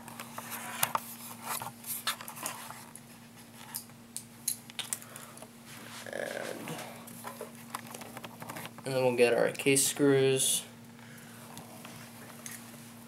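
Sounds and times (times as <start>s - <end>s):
steady low hum: 0.0s - 13.0s
computer parts clicking and rustling: 7.1s - 9.7s.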